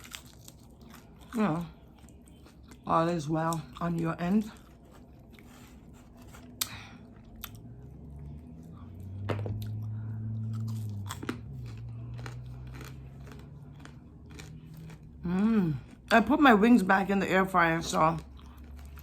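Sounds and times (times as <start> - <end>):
chewing crispy chicken: 0.0 - 16.3, 17.7 - 19.0
low steady hum: 0.0 - 19.0.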